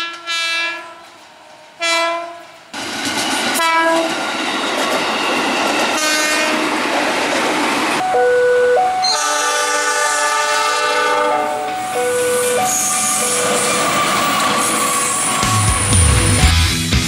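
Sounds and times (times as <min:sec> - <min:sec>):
train horn: 0:00.0 - 0:01.2, 0:01.8 - 0:02.6, 0:03.6 - 0:04.1, 0:05.9 - 0:06.6, 0:08.3 - 0:13.9
electric train passing: 0:00.5 - 0:17.0
two-pitch held tone tune: 0:08.0 - 0:09.6, 0:11.8 - 0:16.5.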